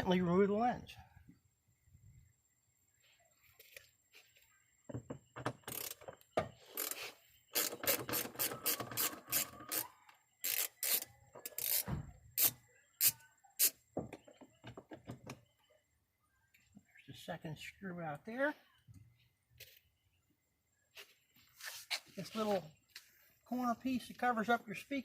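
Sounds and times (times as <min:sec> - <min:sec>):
ratcheting hand tool clicking: 0:05.7 - 0:13.7.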